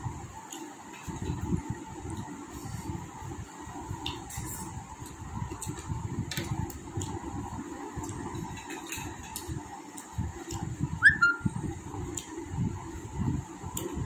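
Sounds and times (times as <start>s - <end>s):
faint steady hum: 0.0s - 14.0s
high rising chirp: 11.0s - 11.5s
chewing with small clicks: 12.1s - 12.4s.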